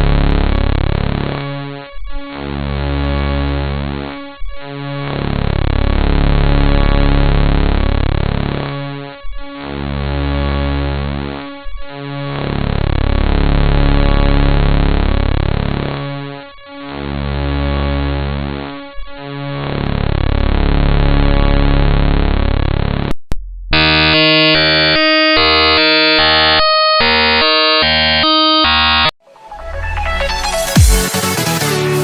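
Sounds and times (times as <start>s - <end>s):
buzzing electronic chord: 12.0s - 23.1s, 23.8s - 32.0s
harsh electronic tones jumping in pitch: 20.0s - 32.0s.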